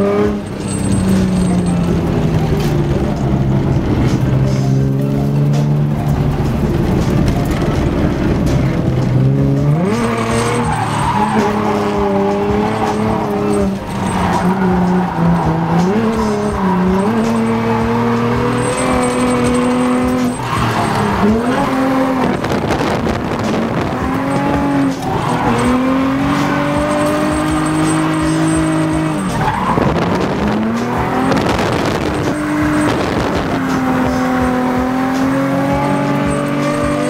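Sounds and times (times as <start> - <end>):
car engine revving hard: 0.0 - 1.3, 9.0 - 37.0
tyre squeal: 0.0 - 1.9, 9.7 - 37.0.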